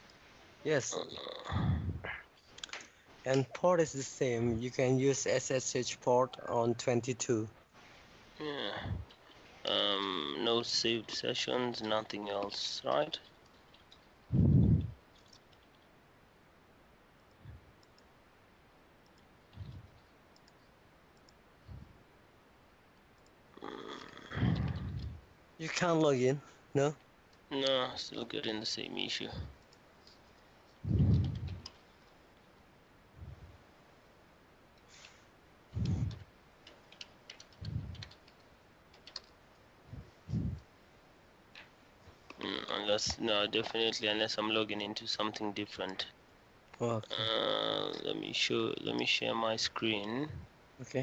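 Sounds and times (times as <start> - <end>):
soft low thumps: 1.5 - 2.2, 14.3 - 15.0, 19.6 - 19.9, 24.4 - 25.3, 30.8 - 31.7, 35.7 - 36.2, 37.6 - 38.1, 39.9 - 40.6
low muffled thumps: 14.3 - 15.0, 30.8 - 31.7
faint clicks: 17.2 - 18.1, 19.0 - 21.4, 35.8 - 39.4
computer keyboard typing: 36.0 - 39.3.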